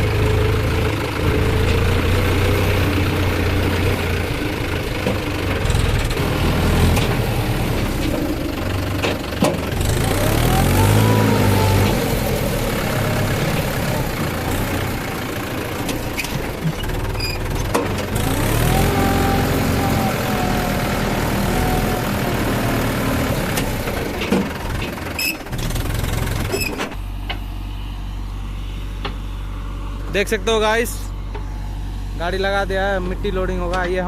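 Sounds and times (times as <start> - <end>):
heavy diesel engine revving: 0.0 - 34.0.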